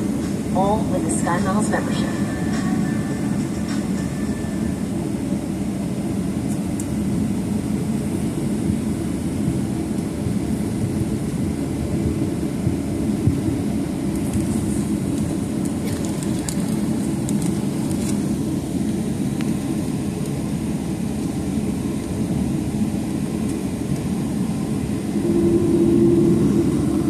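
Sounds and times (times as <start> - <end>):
steady hum: 0.0 - 6.4, 23.7 - 27.0
airplane cabin rumble: 0.0 - 27.0.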